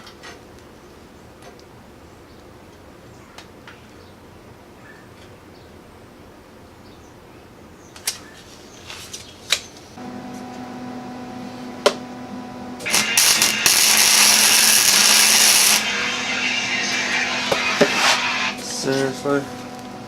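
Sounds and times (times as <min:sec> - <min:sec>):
power tool motor humming: 0:12.8 - 0:18.8
power tool grinding metal: 0:12.8 - 0:19.6.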